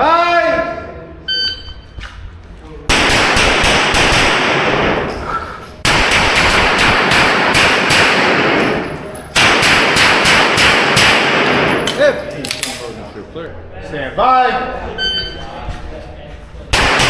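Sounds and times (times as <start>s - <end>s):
rapid echoing pistol fire: 2.9s - 5.2s, 5.8s - 11.9s, 16.7s - 17.0s.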